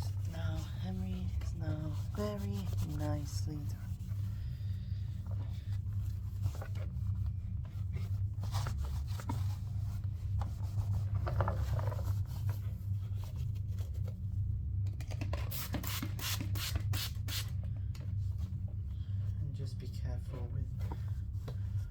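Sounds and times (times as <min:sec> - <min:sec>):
cloth rubbing on plastic: 0:00.0 - 0:14.2
steady low hum: 0:00.0 - 0:21.9.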